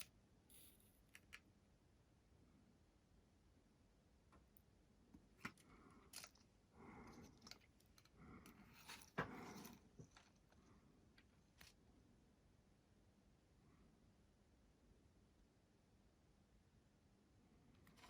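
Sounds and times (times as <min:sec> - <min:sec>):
small parts clicking and rustling: 0:00.0 - 0:01.5, 0:05.2 - 0:11.8.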